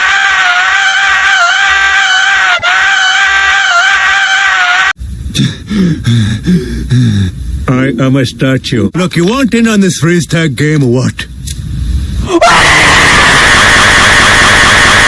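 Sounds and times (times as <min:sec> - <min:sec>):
cartoon scream: 0:00.0 - 0:05.0, 0:12.3 - 0:15.0.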